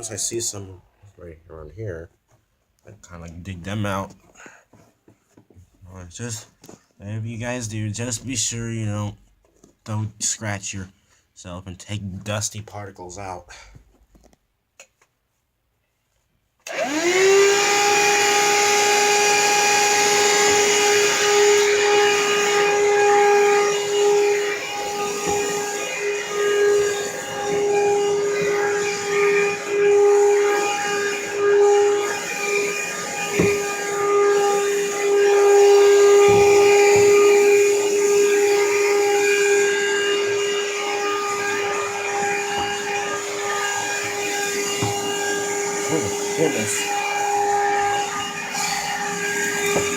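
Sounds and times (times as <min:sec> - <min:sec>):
vacuum cleaner motor whine: 0:16.6 - 0:49.9
dull knocks: 0:36.2 - 0:37.2.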